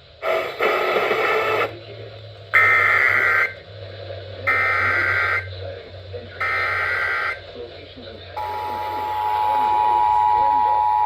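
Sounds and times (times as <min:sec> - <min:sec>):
low steady hum: 0:00.0 - 0:11.0
radio static burst: 0:00.2 - 0:01.8, 0:02.6 - 0:03.6.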